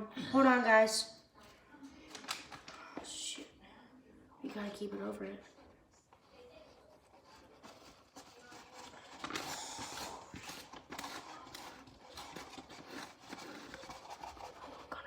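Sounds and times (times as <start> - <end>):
hands handling plastic packaging: 2.0 - 3.1, 7.2 - 15.0
scratchy rustle: 5.4 - 15.0.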